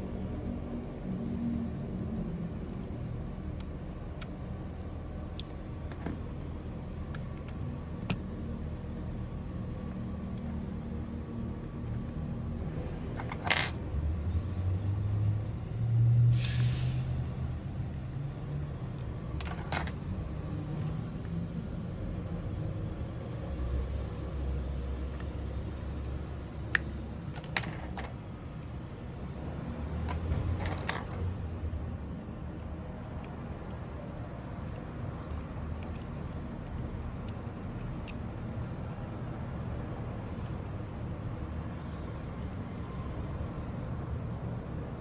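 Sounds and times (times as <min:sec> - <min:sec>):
street traffic low rumble: 0:00.0 - 0:45.0.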